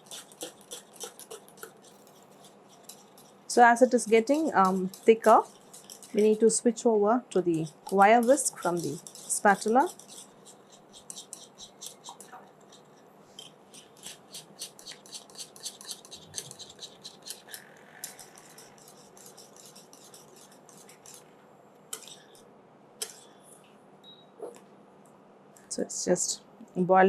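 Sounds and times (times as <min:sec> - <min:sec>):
wire whisk ticking against pan: 0:00.0 - 0:01.9, 0:02.9 - 0:06.3.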